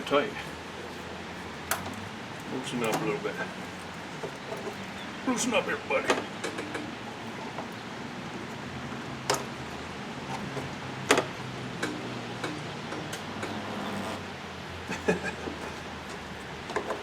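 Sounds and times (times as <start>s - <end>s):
metal clicks and knocks: 1.6s - 4.8s, 9.2s - 13.6s.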